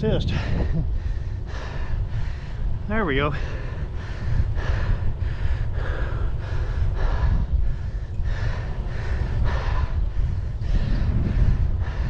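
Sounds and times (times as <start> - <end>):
cyclist breathing hard: 0.0 - 12.0
wind rumble on microphone: 0.0 - 12.0.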